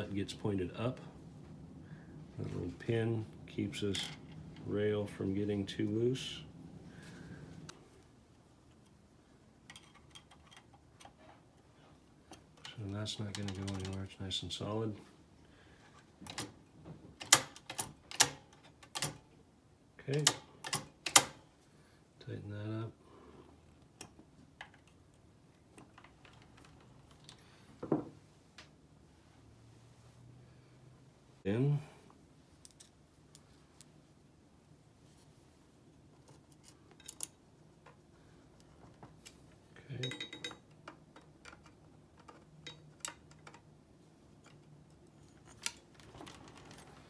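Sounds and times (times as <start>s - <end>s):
faint steady hum: 0.0s - 47.0s
small metal clicks and taps: 40.0s - 43.7s.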